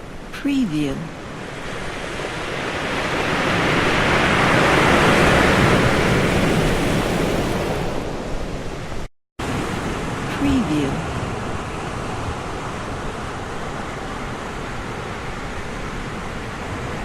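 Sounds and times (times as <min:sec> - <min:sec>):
ocean wave crashing on shore: 0:01.3 - 0:08.5.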